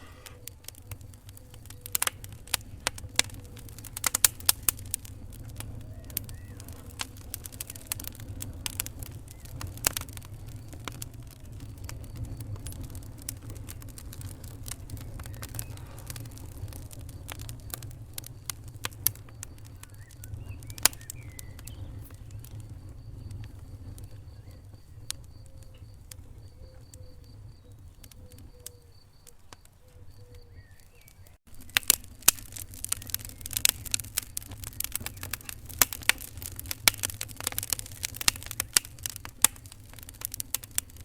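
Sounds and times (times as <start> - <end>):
low fire rumble: 0.0 - 41.0
wood fire crackling and popping: 0.0 - 41.0.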